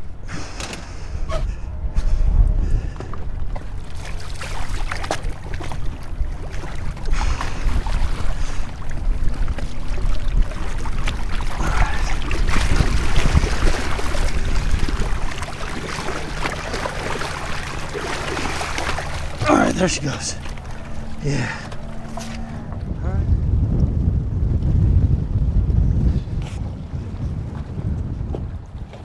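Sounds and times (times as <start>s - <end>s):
water sloshing against boat hull: 0.0s - 23.0s
wind rumbling on microphone: 0.0s - 29.0s.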